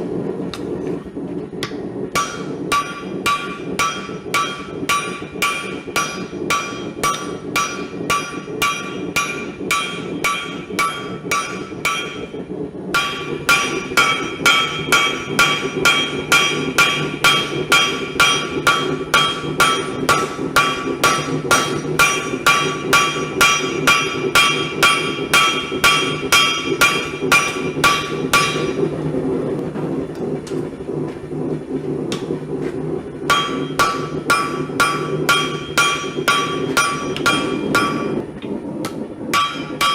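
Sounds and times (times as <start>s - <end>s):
low rumble: 0.0s - 39.9s
hammer striking steel on anvil: 1.6s - 12.3s, 13.0s - 28.8s, 33.3s - 38.2s, 39.3s - 39.9s.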